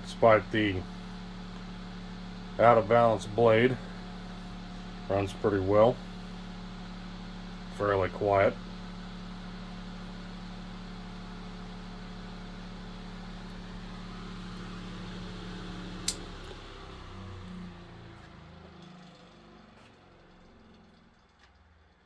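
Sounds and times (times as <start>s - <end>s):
table fan humming: 0.0s - 18.3s
fan switch click: 16.0s - 16.6s.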